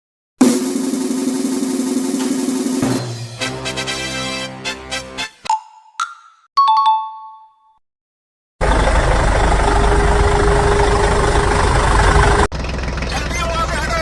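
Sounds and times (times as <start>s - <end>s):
chime dings: 6.6s - 7.7s
vehicle engine running: 8.6s - 14.0s.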